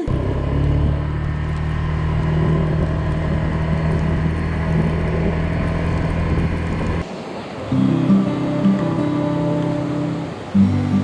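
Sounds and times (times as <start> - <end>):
vehicle engine running: 0.0 - 7.1.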